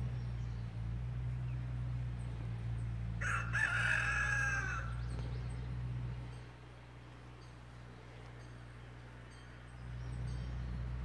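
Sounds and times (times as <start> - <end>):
steady low hum: 0.0 - 11.0
rooster crowing: 3.2 - 5.1.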